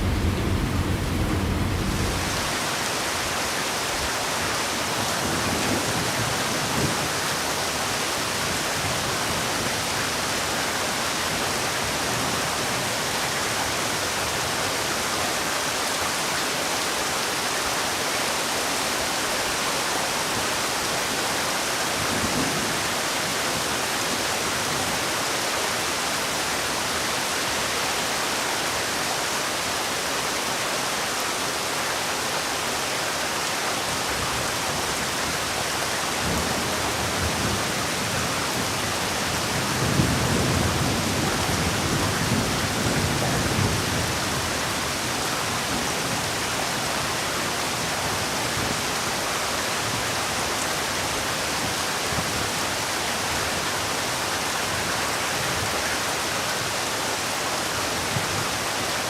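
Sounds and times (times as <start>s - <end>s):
low rumbles: 0.0s - 2.6s
heavy rain falling: 0.0s - 59.0s.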